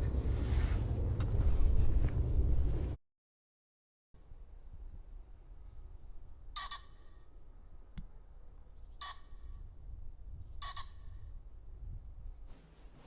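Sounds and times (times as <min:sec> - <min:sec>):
low rumble: 0:00.0 - 0:03.0
bird calling: 0:06.6 - 0:07.3, 0:08.8 - 0:09.6.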